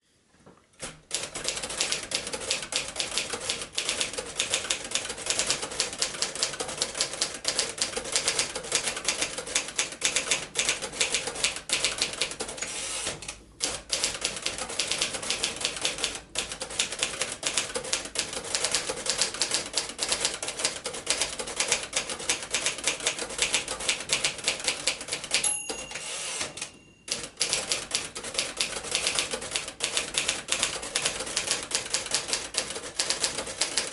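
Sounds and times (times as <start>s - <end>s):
brief ringing tone: 25.4s - 27.1s.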